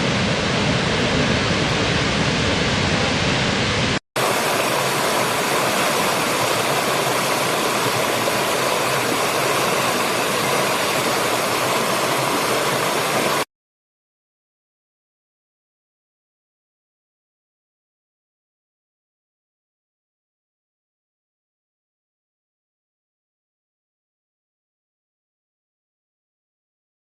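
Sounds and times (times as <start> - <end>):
hissy waterfall rushing: 0.0 - 13.5
waterfall rushing: 3.1 - 13.5.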